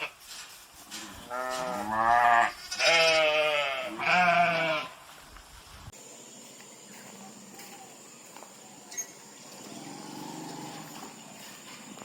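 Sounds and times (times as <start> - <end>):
sheep bleating: 1.3 - 5.0.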